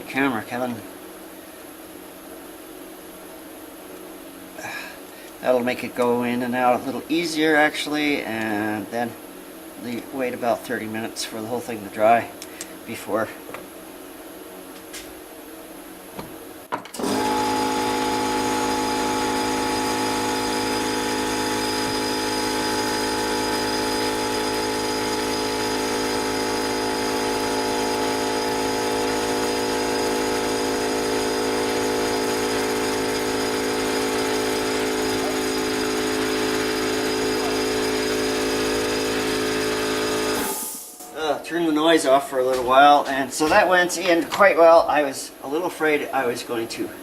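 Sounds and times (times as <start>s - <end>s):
small electric motor humming: 17.0s - 40.7s.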